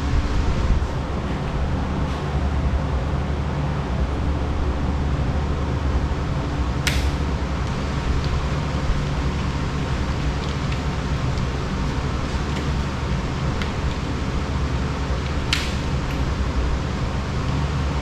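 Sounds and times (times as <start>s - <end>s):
low rumbling hum: 0.0s - 18.0s
wire snips cutting: 6.8s - 7.2s, 15.2s - 16.3s.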